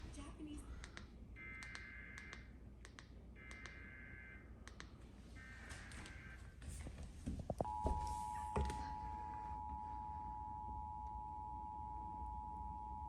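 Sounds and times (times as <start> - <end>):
clicks: 0.8 - 3.8, 4.6 - 5.0.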